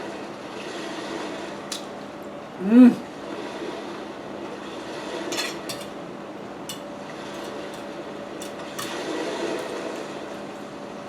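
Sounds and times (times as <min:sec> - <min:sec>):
steady background hum: 0:00.0 - 0:11.0
utensils clinking on plate: 0:05.3 - 0:06.0, 0:06.7 - 0:09.8.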